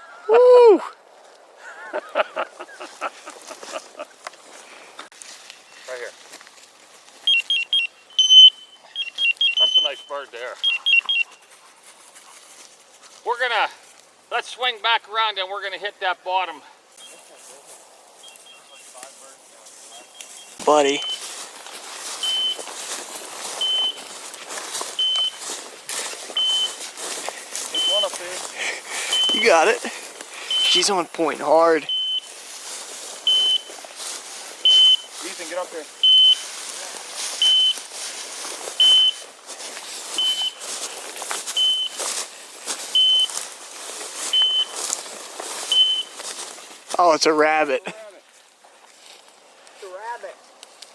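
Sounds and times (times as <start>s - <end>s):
rustling: 2.6s - 7.6s, 10.7s - 14.2s, 17.0s - 47.2s
short high beeps: 7.2s - 11.4s, 20.2s - 21.4s, 22.2s - 22.7s, 23.5s - 24.1s, 24.9s - 25.5s, 26.3s - 26.9s, 27.7s - 28.4s, 29.1s - 29.8s, 30.5s - 31.0s, 31.8s - 32.3s, 33.2s - 33.8s, 34.6s - 35.2s, 36.0s - 36.5s, 37.4s - 37.8s, 38.8s - 39.2s, 40.1s - 40.7s, 41.5s - 42.0s, 43.0s - 43.4s, 44.3s - 44.8s, 45.7s - 46.2s.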